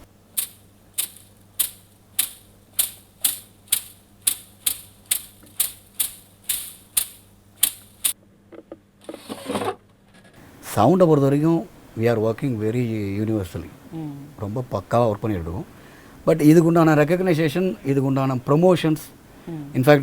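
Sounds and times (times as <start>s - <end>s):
sharp mechanical clicks: 0.3s - 8.2s.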